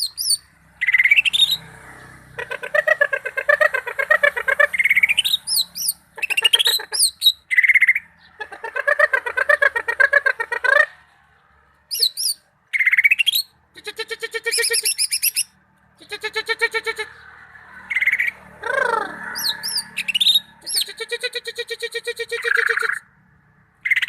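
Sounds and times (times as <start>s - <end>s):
bird singing trills and whistles: 0.0s - 1.6s, 4.6s - 8.4s, 11.9s - 16.2s, 17.9s - 18.4s, 19.3s - 21.0s, 22.1s - 23.0s.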